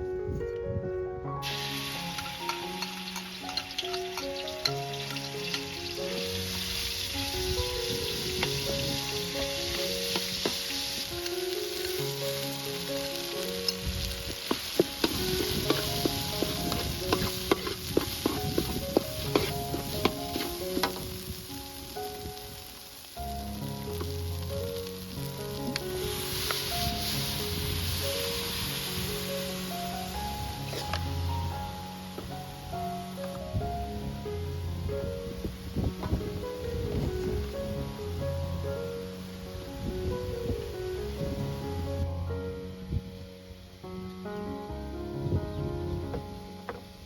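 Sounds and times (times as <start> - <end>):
background music melody: 0.0 - 47.0
food sizzling in a pan: 1.4 - 34.5, 35.3 - 42.0
spatula scraping a pan: 14.4 - 21.0.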